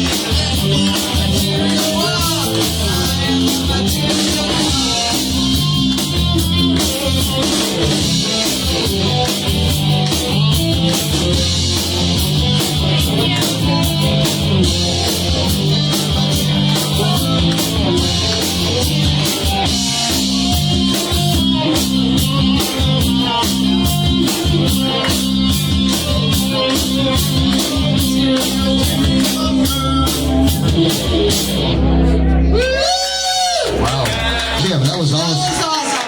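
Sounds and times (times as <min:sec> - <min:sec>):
drum kit beat: 0:00.0 - 0:31.8
electric guitar: 0:00.0 - 0:34.9
bass guitar: 0:00.0 - 0:36.0.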